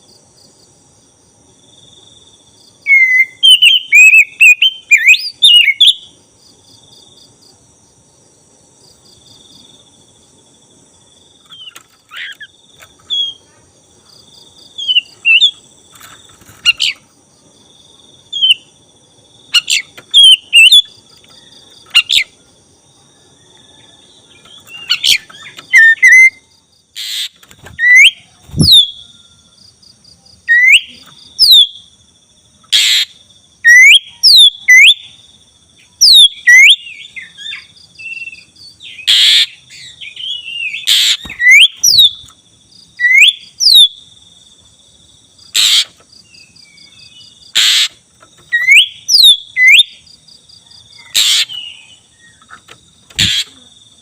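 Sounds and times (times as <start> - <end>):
bird singing whistled notes: 2.9 - 6.2, 14.8 - 15.6, 18.3 - 18.8, 19.5 - 22.4, 23.4 - 26.5, 27.1 - 29.4, 30.5 - 31.8, 32.8 - 35.2, 36.0 - 42.3, 43.0 - 44.0, 48.5 - 50.0
harsh scratchy bird calls: 11.4 - 13.7, 14.7 - 17.1, 19.5 - 22.4, 24.3 - 26.4, 27.0 - 29.0, 32.7 - 35.0, 38.9 - 42.3, 45.5 - 46.1, 47.2 - 49.9, 51.0 - 53.7.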